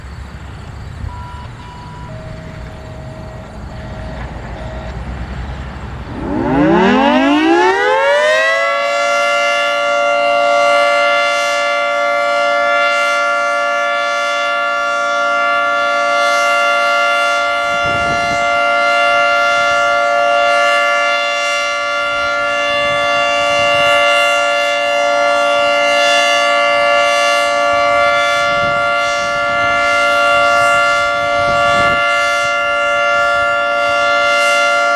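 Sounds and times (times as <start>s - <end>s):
warning siren winding up: 1.1s - 13.3s.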